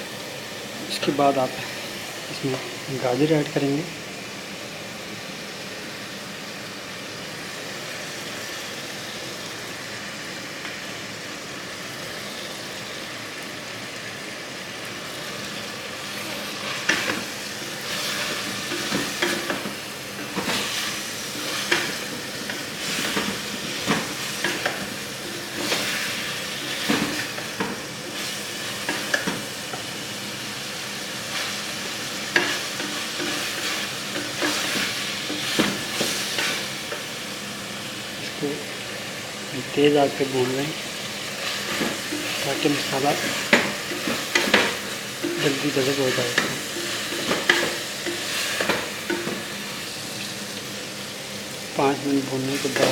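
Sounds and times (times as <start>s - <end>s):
masala sizzling in a pan: 0.0s - 52.9s
spoon scraping and clacking pan: 16.7s - 29.9s, 32.2s - 37.0s, 41.5s - 49.6s.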